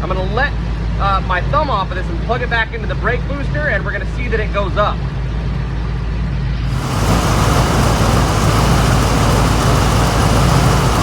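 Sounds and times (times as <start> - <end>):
air rushing hiss: 6.7 - 11.0
car engine idling: 6.7 - 11.0.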